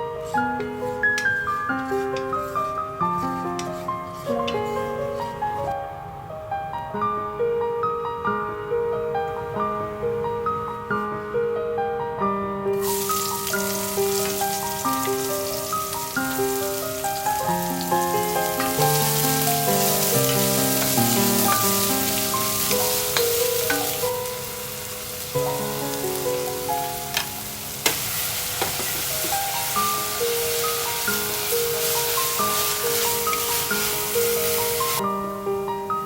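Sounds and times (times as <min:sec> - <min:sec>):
piano background music: 0:00.0 - 0:36.0
food sizzling in hot oil: 0:12.8 - 0:35.1.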